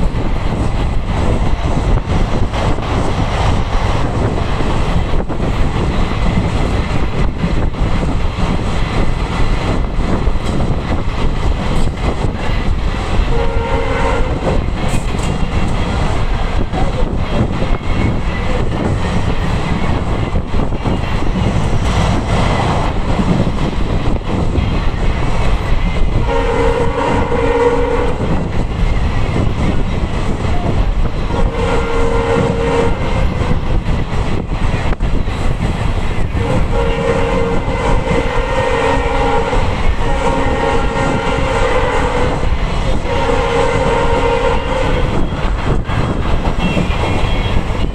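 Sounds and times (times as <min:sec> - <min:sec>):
train engine and wheels rumbling: 0:00.0 - 0:47.9
locomotive horn blasts: 0:13.3 - 0:14.6, 0:26.1 - 0:28.4, 0:31.3 - 0:33.6, 0:36.4 - 0:45.4, 0:46.5 - 0:47.9.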